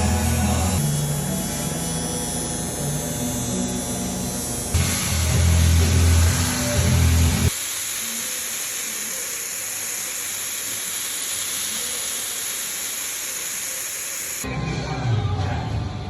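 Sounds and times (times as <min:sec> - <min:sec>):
steady hiss: 0:04.8 - 0:14.4.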